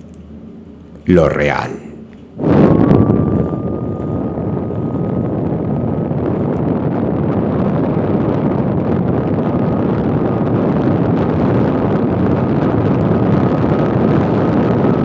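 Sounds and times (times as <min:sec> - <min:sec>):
dense low drone: 0:00.0 - 0:06.7
faint thin steady tone: 0:01.8 - 0:06.6.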